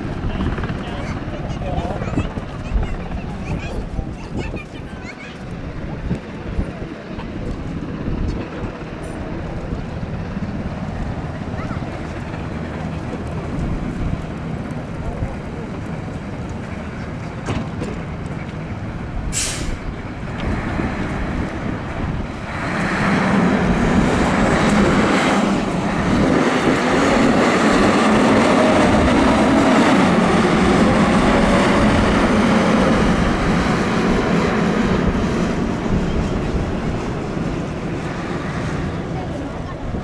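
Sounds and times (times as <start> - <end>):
fire truck engine and pump: 7.3 - 40.0
short sharp hiss: 19.3 - 19.8.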